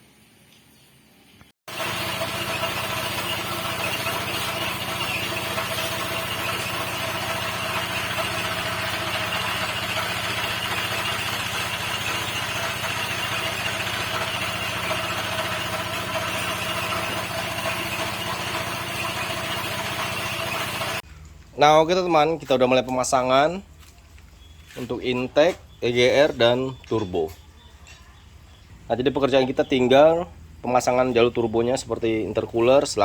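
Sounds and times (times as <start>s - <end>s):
motor running steadily: 1.7s - 21.0s.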